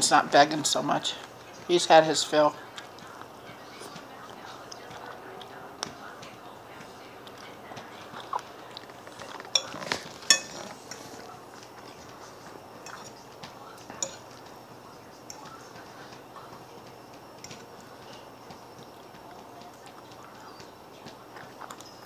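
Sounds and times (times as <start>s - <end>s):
fork clinking on a plate: 9.3s - 11.0s, 13.9s - 14.4s.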